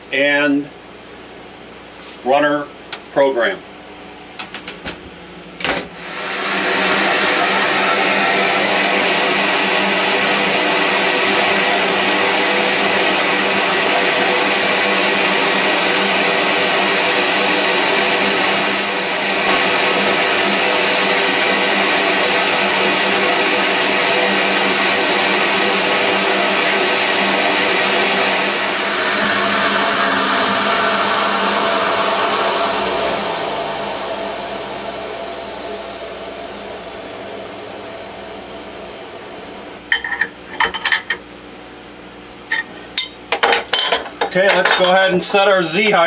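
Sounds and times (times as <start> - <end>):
cnc router spindle cutting wood: 6.0 - 38.0
dust collector noise: 6.0 - 41.4, 44.0 - 46.0.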